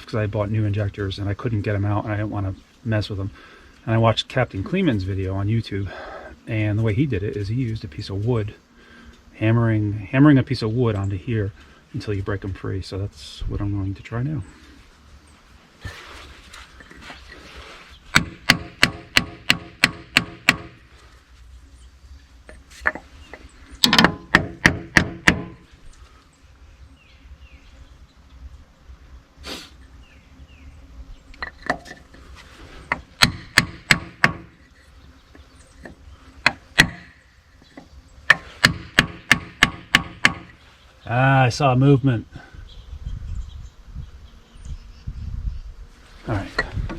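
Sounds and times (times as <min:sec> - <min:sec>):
hammer striking wood block: 0:18.2 - 0:20.7, 0:23.8 - 0:25.6, 0:33.2 - 0:34.5, 0:36.5 - 0:37.1, 0:38.3 - 0:40.5.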